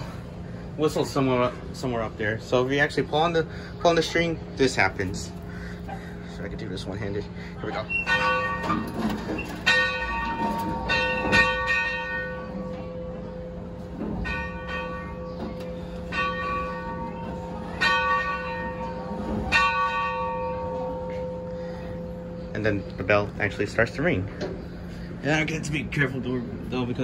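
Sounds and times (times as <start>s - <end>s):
locomotive bell clanging: 4.0s - 24.8s.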